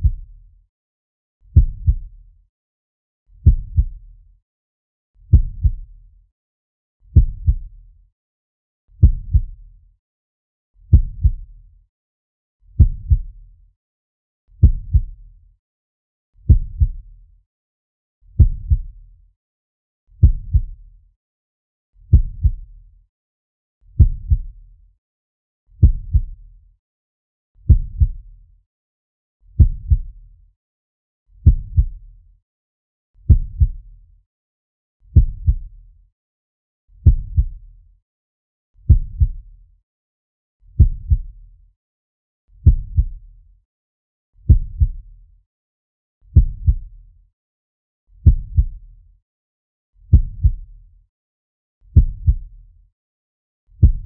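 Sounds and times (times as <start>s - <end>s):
heartbeat thumps: 1.6s - 2.1s, 3.4s - 4.0s, 5.3s - 5.8s, 7.2s - 7.7s, 9.0s - 9.6s, 10.9s - 11.4s, 12.8s - 13.3s, 14.6s - 15.2s, 16.5s - 17.0s, 18.4s - 18.9s, 20.2s - 20.8s, 22.1s - 22.6s, 24.0s - 24.5s, 25.8s - 26.4s, 27.7s - 28.2s, 29.6s - 30.1s, 31.4s - 32.0s, 33.3s - 33.8s, 35.2s - 35.7s, 37.0s - 37.6s, 38.9s - 39.4s, 40.8s - 41.3s, 42.6s - 43.1s, 44.5s - 45.0s, 46.4s - 46.9s, 48.2s - 48.8s, 50.1s - 50.6s, 52.0s - 52.5s, 53.8s - 54.0s.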